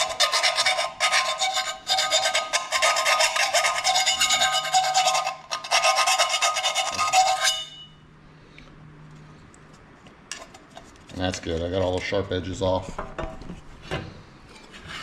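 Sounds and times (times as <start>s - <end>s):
tool rasping on metal edges: 0.0s - 7.9s
thin metal ringing: 7.2s - 8.0s.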